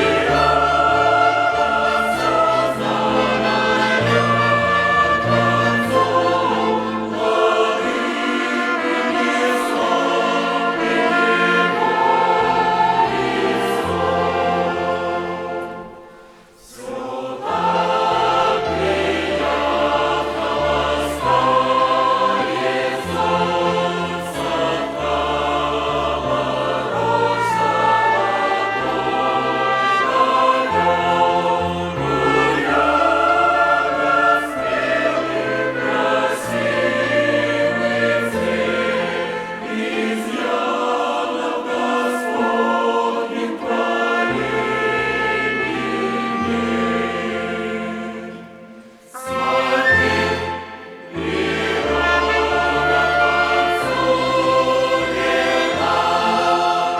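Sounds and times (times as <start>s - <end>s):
choir singing a hymn: 0.0s - 56.9s
violin orchestra: 0.0s - 56.9s.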